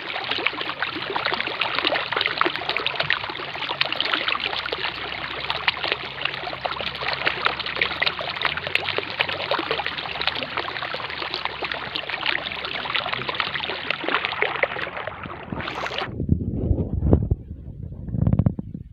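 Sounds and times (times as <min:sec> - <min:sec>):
stream rushing and trickling: 0:00.0 - 0:16.1.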